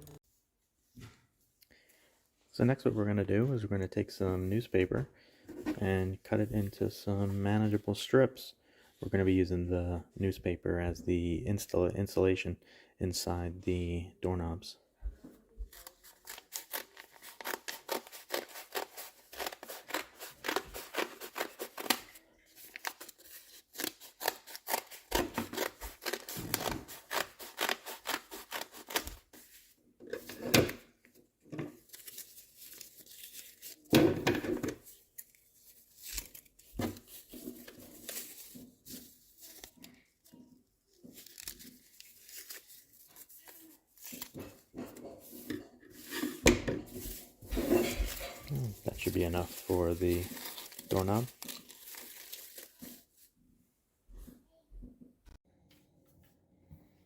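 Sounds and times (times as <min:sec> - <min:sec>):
scissors cutting paper: 0:15.8 - 0:29.4.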